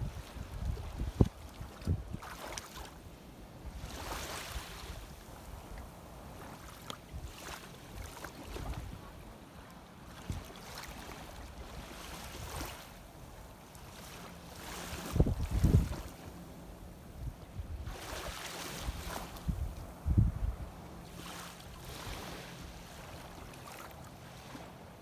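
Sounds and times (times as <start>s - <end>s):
wind on microphone: 0.0s - 2.4s, 8.0s - 9.2s, 14.8s - 16.2s, 17.0s - 20.8s
sea water sloshing and lapping: 0.0s - 25.0s.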